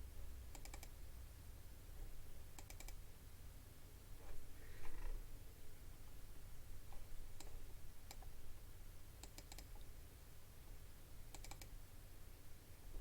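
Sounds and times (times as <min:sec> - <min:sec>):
low steady hum: 0:00.0 - 0:13.0
computer mouse clicks: 0:00.5 - 0:00.9, 0:02.6 - 0:03.0, 0:06.9 - 0:08.3, 0:09.2 - 0:09.9, 0:11.3 - 0:11.7.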